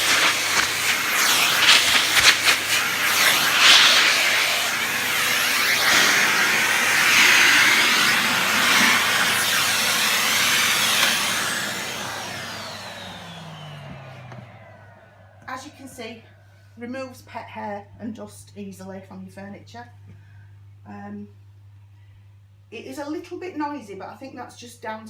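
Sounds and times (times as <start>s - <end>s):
motor winding down whine: 0.0s - 16.0s
vacuum cleaner suction hiss: 0.0s - 16.6s.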